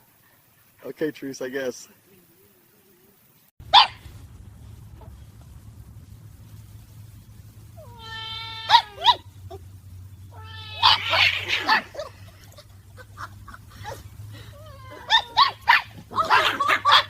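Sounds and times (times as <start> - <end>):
rough hissing noise: 0.0 - 17.0
cat meowing: 7.8 - 9.2, 10.3 - 12.0.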